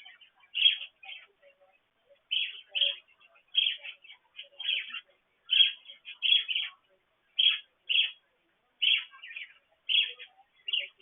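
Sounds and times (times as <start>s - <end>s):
budgerigars chirping: 0.0s - 1.3s, 2.2s - 8.2s, 8.8s - 11.0s.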